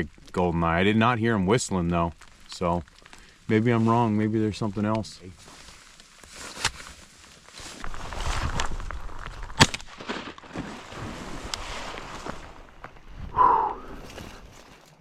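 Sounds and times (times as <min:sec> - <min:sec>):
rustling and shuffling: 0:02.1 - 0:13.3.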